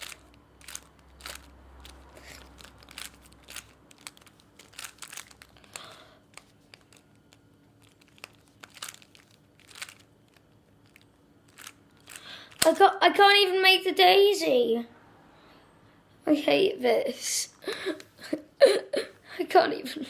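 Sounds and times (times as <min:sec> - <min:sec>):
puzzle cube clicking: 0:00.0 - 0:06.9.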